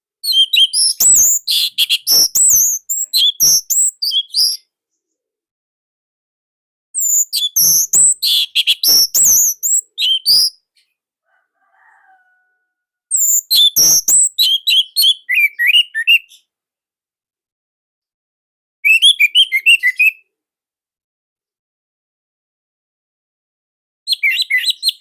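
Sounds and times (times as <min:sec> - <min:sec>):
thrush singing whistles and chirps: 0:00.2 - 0:04.7, 0:07.0 - 0:10.7, 0:13.1 - 0:16.5, 0:18.8 - 0:20.2, 0:24.1 - 0:25.0.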